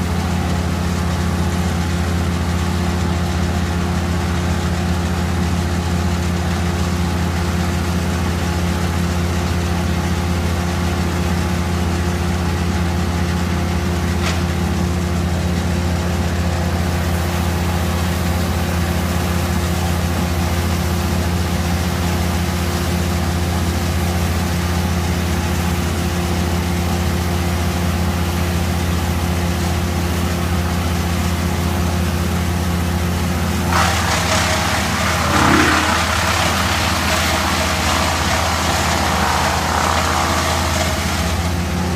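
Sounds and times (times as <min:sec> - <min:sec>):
large engine droning steadily: 0:00.0 - 0:41.9.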